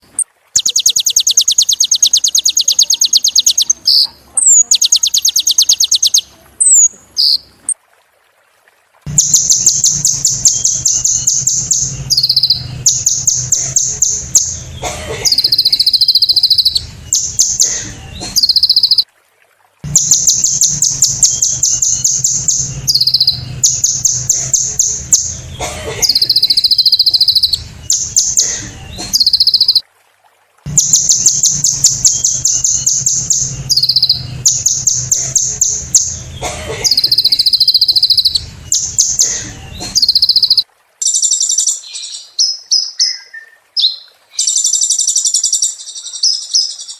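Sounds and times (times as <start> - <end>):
sunbird singing fast trills: 0.6 - 7.4, 9.1 - 19.0, 19.9 - 28.5, 29.1 - 29.8, 30.7 - 46.9.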